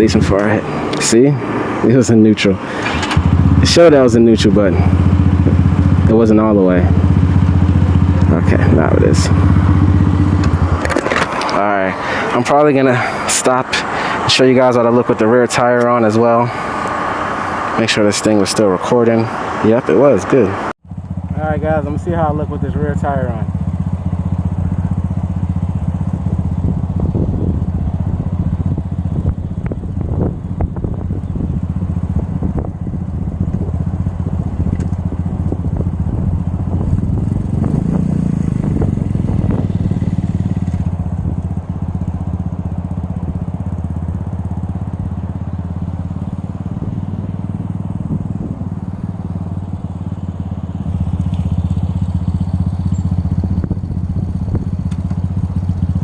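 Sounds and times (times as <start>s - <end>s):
motorcycle engine running: 0.0s - 56.0s
sharp clicks and crackles: 34.7s - 35.6s, 54.8s - 55.2s.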